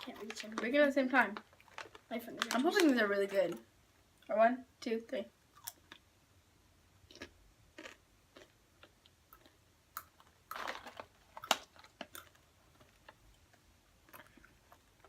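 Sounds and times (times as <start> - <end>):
people chewing crunchy chips: 1.4 - 2.9, 5.5 - 6.1, 7.1 - 15.0.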